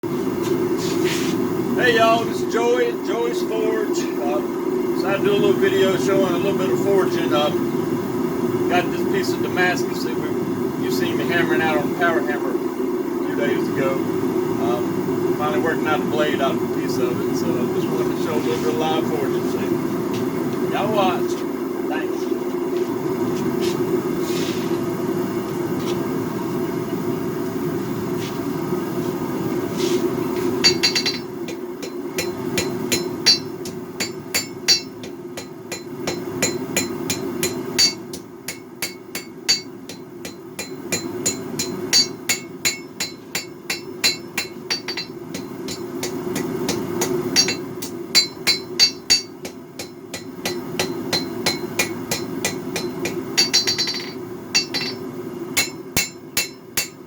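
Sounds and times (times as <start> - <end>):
hammer striking steel on anvil: 30.6 - 55.0, 55.6 - 57.0.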